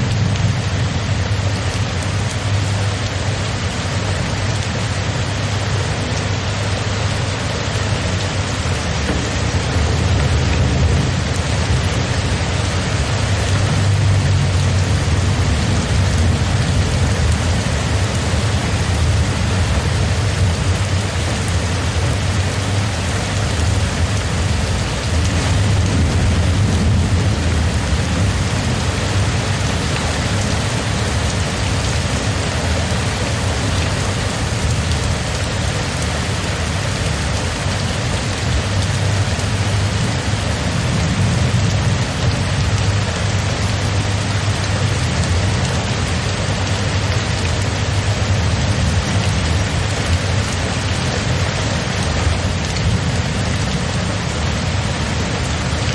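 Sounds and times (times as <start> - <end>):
steady rain: 0.0 - 55.9
low rumble: 23.5 - 32.2.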